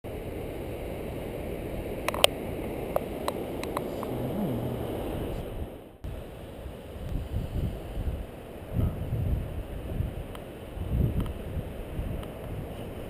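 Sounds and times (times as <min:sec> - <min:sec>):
wind buffeting microphone: 0:07.0 - 0:13.0.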